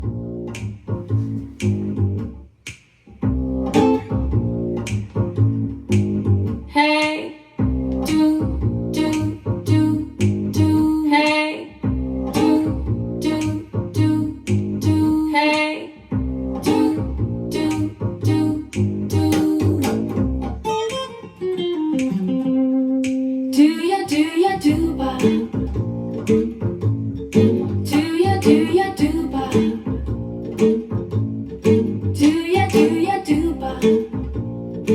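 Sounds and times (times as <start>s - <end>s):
guitar instrumental over speakers: 3.2s - 6.6s, 20.3s - 23.5s, 25.2s - 34.9s.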